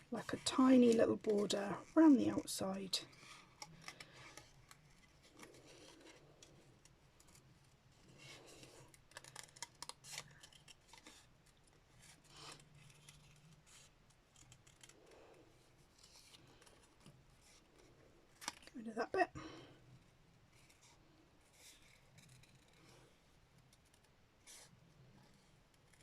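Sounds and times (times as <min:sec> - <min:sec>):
paper rustling: 0:03.1 - 0:18.8.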